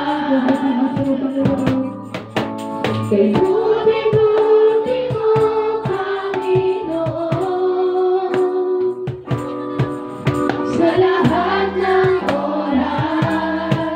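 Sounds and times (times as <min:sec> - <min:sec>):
steady drum beat: 0:00.4 - 0:07.6, 0:09.0 - 0:13.9
worship song sung over live band: 0:03.1 - 0:08.8, 0:10.7 - 0:13.9.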